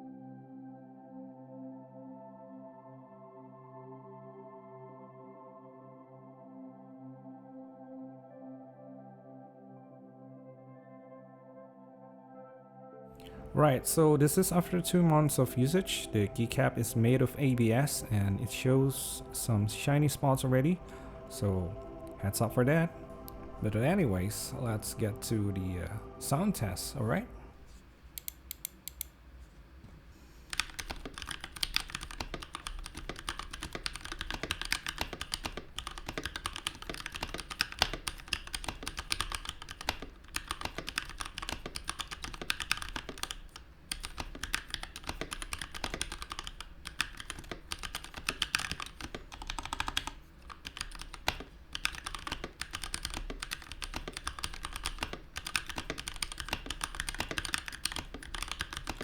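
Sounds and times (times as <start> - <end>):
mechanical keyboard typing: 28.2 - 29.1, 30.5 - 59.0.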